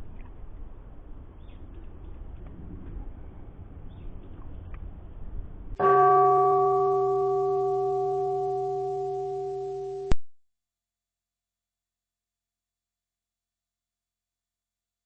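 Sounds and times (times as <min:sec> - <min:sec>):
outdoor background noise: 0:00.0 - 0:10.2
bell-like chime ringing: 0:05.8 - 0:10.2.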